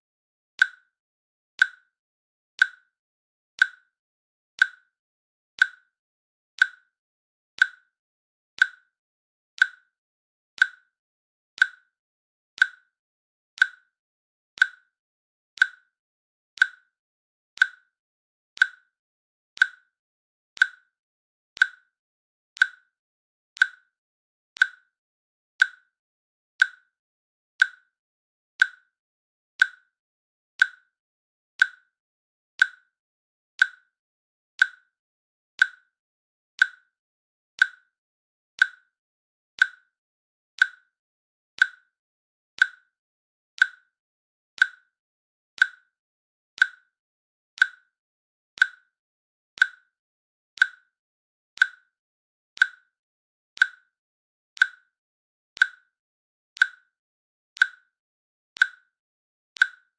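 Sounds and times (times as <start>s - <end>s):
timer ticking clicks: 0.6s - 1.0s, 1.6s - 2.0s, 2.6s - 3.0s, 3.6s - 4.0s, 4.6s - 5.0s, 5.6s - 6.0s, 6.6s - 7.0s, 7.6s - 8.0s, 8.6s - 9.0s, 9.6s - 10.0s, 10.6s - 11.0s, 11.6s - 12.0s, 12.6s - 13.0s, 13.6s - 14.0s, 14.6s - 15.0s, 15.6s - 16.0s, 16.6s - 17.0s, 17.6s - 18.0s, 18.6s - 19.0s, 19.6s - 20.0s, 20.6s - 21.0s, 21.6s - 22.0s, 22.6s - 23.0s, 23.6s - 24.0s, 24.6s - 25.0s, 25.6s - 26.0s, 26.6s - 27.0s, 27.6s - 28.0s, 28.6s - 29.0s, 29.6s - 30.0s, 30.6s - 31.0s, 31.6s - 32.0s, 32.6s - 33.0s, 33.6s - 34.0s, 34.6s - 35.0s, 35.6s - 36.0s, 36.6s - 37.0s, 37.6s - 38.0s, 38.6s - 39.0s, 39.6s - 40.0s, 40.6s - 41.0s, 41.6s - 42.0s, 42.6s - 43.0s, 43.6s - 44.0s, 44.6s - 45.0s, 45.6s - 46.0s, 46.6s - 47.0s, 47.6s - 48.0s, 48.6s - 49.0s, 49.6s - 50.0s, 50.6s - 51.0s, 51.6s - 52.0s, 52.6s - 53.0s, 53.6s - 54.0s, 54.6s - 55.0s, 55.6s - 56.0s, 56.6s - 57.0s, 57.6s - 58.0s, 58.6s - 59.0s, 59.6s - 59.9s.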